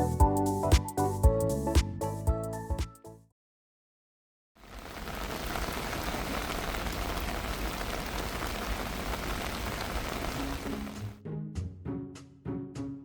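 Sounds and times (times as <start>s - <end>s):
heavy rain falling: 4.6s - 11.2s.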